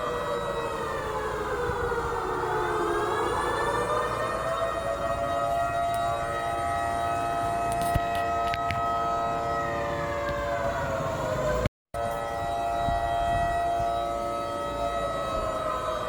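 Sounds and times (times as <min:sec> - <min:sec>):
warning siren wailing: 0:00.0 - 0:16.0.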